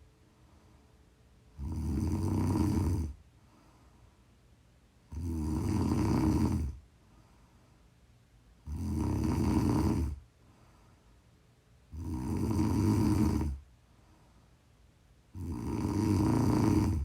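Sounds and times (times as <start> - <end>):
loud deep snoring: 1.5 - 3.2, 5.1 - 6.8, 8.6 - 10.2, 11.9 - 13.6, 15.3 - 17.0.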